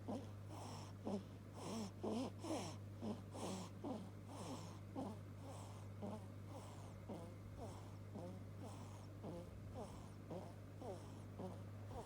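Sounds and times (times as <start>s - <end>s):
steady low hum: 0.0s - 12.0s
fast wheezy snoring: 0.1s - 12.0s.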